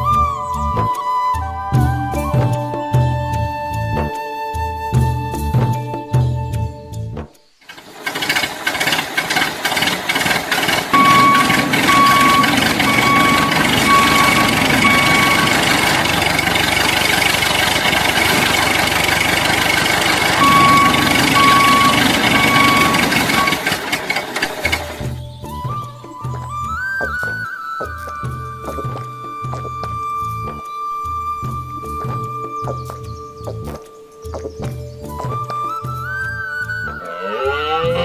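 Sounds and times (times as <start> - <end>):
short beeps: 11.0 - 16.3, 20.2 - 23.8.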